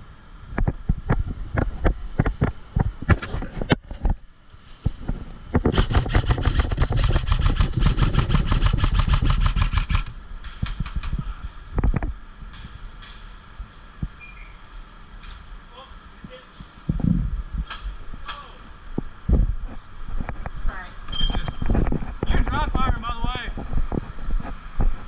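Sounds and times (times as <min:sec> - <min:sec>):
sharp clicks and knocks: 0:05.5 - 0:11.2
airsoft gun firing full auto: 0:05.7 - 0:10.1.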